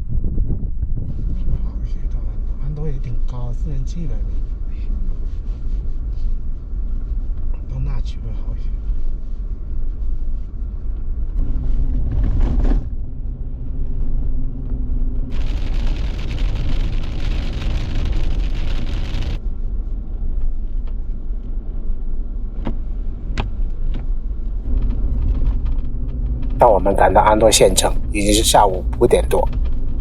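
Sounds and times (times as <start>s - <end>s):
car engine and road rumble: 11.2s - 20.0s.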